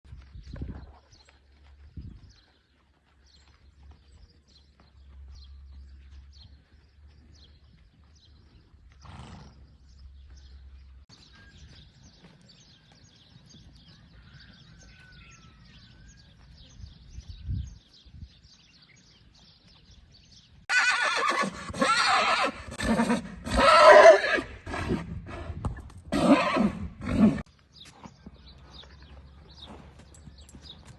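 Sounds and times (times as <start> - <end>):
horse neighing loudly: 20.7 - 25.1, 26.1 - 27.4.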